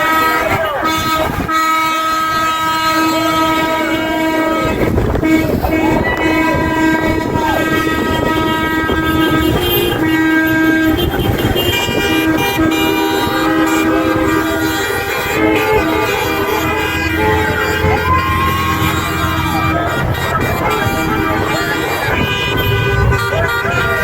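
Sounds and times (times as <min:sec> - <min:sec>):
passing traffic: 0:00.0 - 0:24.0
vehicle horns honking: 0:00.0 - 0:24.0.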